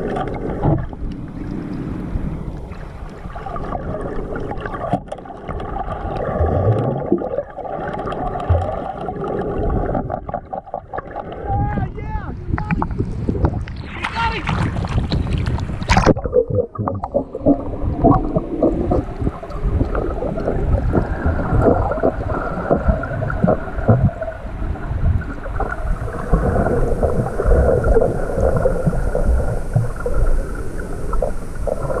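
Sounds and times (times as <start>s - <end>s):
underwater knocks and pops: 0.0s - 1.2s, 4.7s - 11.2s, 12.5s - 13.8s, 14.5s - 24.4s
water gurgling underwater: 0.0s - 11.8s, 12.4s - 32.0s.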